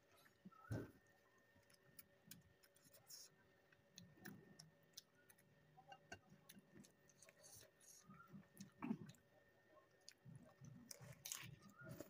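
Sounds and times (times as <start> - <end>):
mouth clicks and chewing: 9.9 - 12.0.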